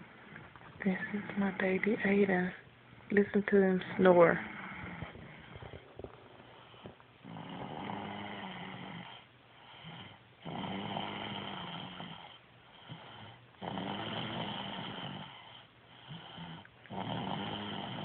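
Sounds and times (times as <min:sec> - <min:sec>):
baby snoring: 0:04.3 - 0:18.0.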